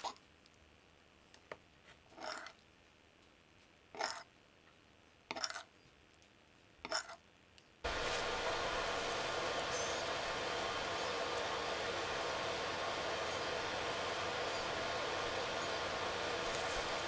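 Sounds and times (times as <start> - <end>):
steady hiss: 7.9 - 17.0.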